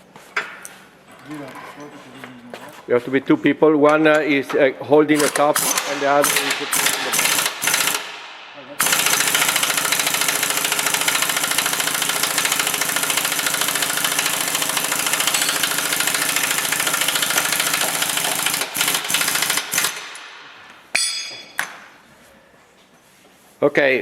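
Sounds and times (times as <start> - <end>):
pneumatic impact wrench hammering: 5.2 - 21.8.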